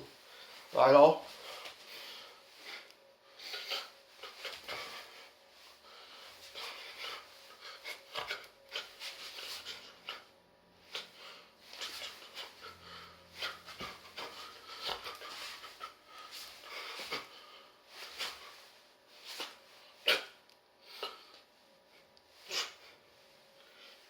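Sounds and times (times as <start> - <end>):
clothes rustling: 3.5 - 10.2, 10.8 - 20.4.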